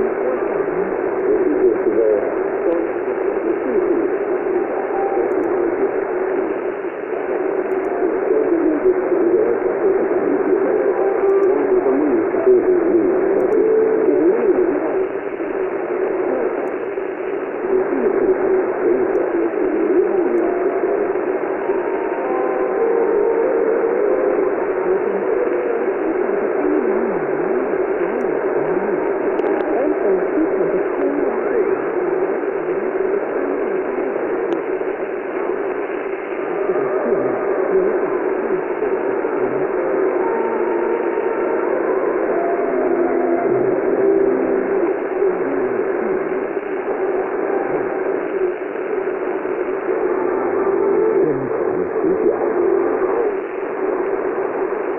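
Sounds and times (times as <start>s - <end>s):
radio static hiss: 0.0s - 54.9s
short wavering radio tones: 34.7s - 54.9s.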